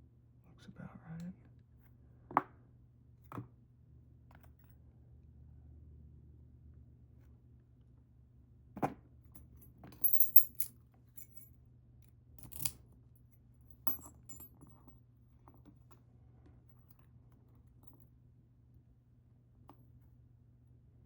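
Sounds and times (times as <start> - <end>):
metal parts clinking: 10.0 - 11.4, 12.4 - 12.8.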